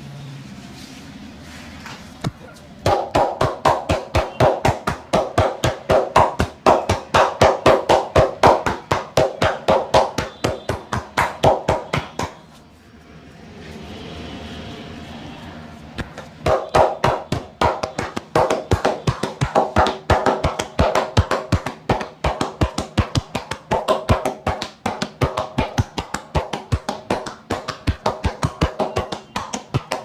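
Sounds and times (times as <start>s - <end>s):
hands tapping on head: 2.8s - 12.4s, 16.0s - 30.0s.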